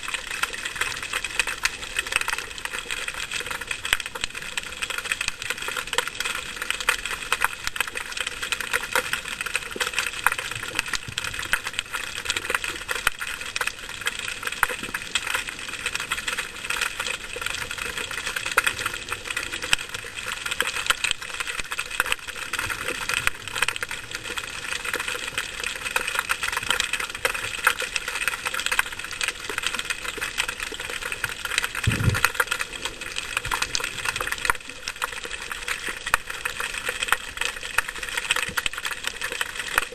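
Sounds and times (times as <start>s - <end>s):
underwater crackling: 0.0s - 39.9s
low thump: 31.9s - 32.3s.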